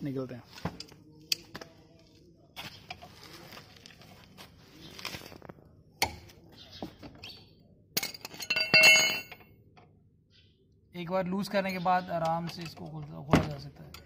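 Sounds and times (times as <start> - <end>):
metal tools tapping on metal: 8.0 - 9.5, 11.4 - 14.0
metallic clang: 8.0 - 9.5.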